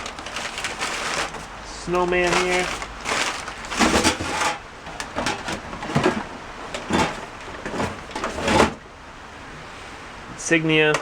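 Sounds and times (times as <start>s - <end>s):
rustles and knocks in cardboard box: 0.0s - 1.5s, 2.2s - 8.8s.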